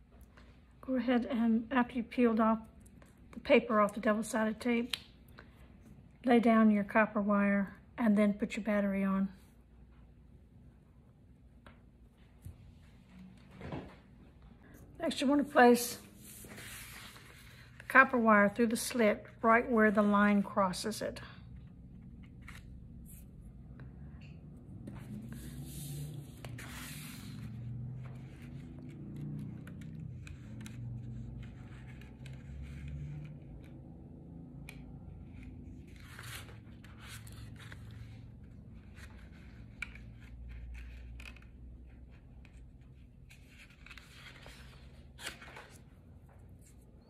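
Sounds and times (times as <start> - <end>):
paper rustling and scraping: 16.0 - 17.9, 24.8 - 33.8, 35.3 - 41.6, 42.8 - 46.9.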